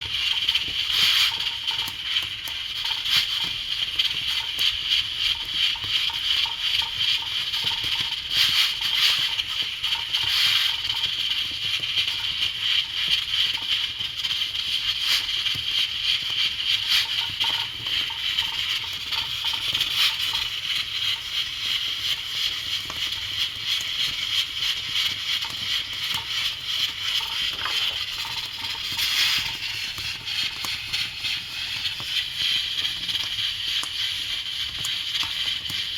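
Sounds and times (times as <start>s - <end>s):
pressure cooker steam hissing: 0.0s - 35.9s.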